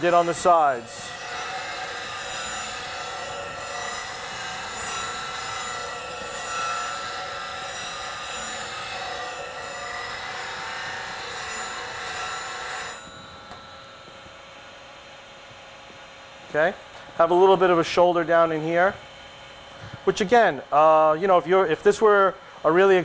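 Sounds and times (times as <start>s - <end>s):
bench grinder humming: 0.0s - 15.4s
grinding rasp with ringing tones: 0.0s - 23.0s.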